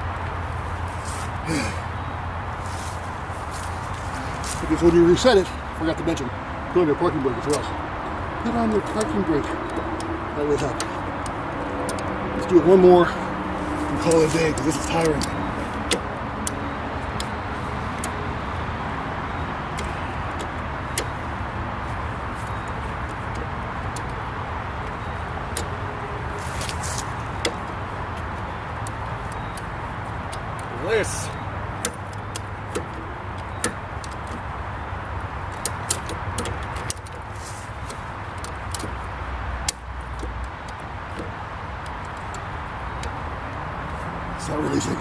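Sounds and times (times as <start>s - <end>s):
ratchet strap clicking: 13.6s - 30.7s, 31.4s - 44.1s.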